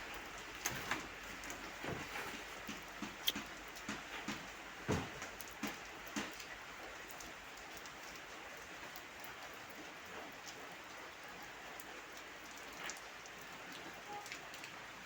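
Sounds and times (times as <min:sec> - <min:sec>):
heavy rain falling: 0:00.0 - 0:15.0
scattered knocks: 0:02.6 - 0:06.4.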